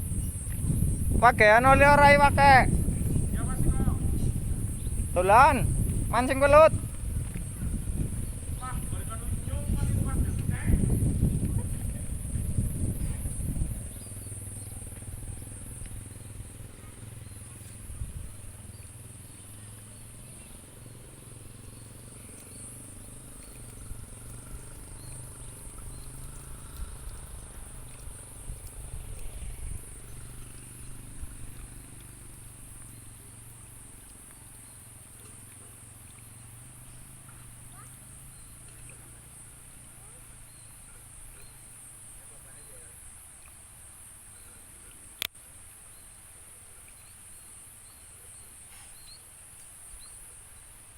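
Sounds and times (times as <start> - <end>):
handling noise rumble: 0.0 - 18.5
insects chirring: 0.0 - 50.9.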